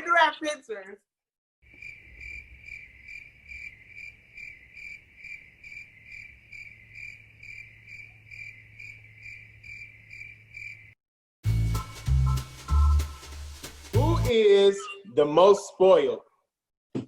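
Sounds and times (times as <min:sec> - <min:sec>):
cricket chirping: 0:01.6 - 0:11.0.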